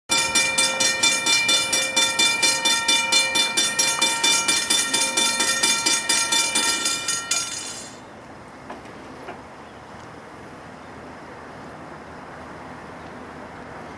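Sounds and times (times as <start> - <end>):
railroad crossing bell ringing: 0.1 - 8.1.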